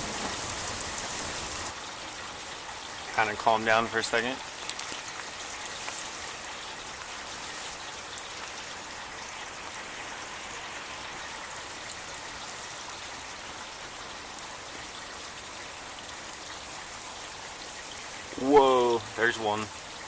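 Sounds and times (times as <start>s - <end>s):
steady rain hiss: 0.0s - 20.0s
rain drop ticks: 3.1s - 6.2s.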